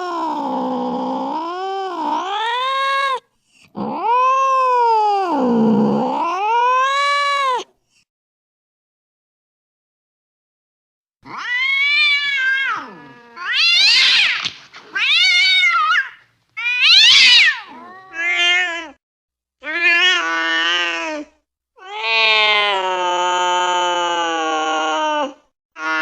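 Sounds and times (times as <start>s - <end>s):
cat yowling angrily: 3.8s - 7.7s, 11.2s - 19.0s, 19.6s - 26.0s.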